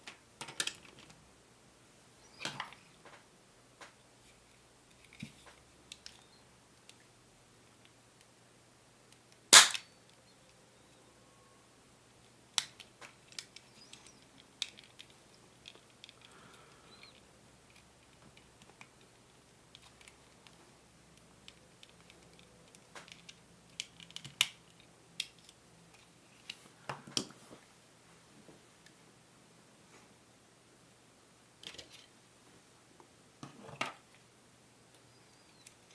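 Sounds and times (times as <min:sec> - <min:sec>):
sharp snap: 0:09.5 - 0:09.9
small parts clicking: 0:12.6 - 0:19.1, 0:21.4 - 0:27.2.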